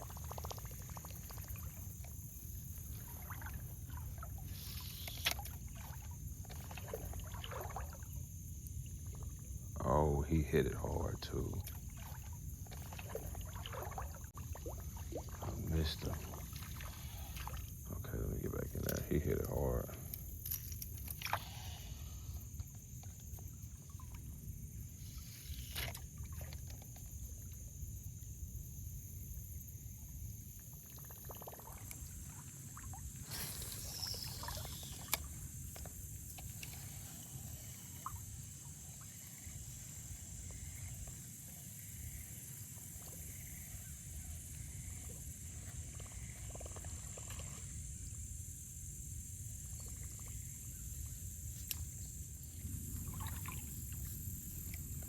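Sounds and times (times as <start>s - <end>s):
high-pitched hiss: 4.4s - 5.5s, 32.0s - 55.0s.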